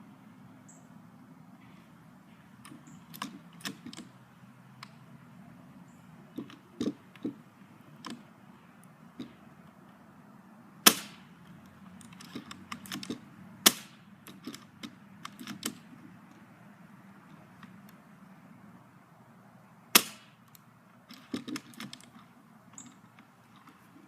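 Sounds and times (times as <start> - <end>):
gun handling clicks and knocks: 2.3 - 4.1, 6.3 - 10.0, 10.9 - 16.5, 20.0 - 24.0
airsoft rifle shots cracking: 10.8 - 11.3, 13.6 - 14.1, 19.9 - 20.4.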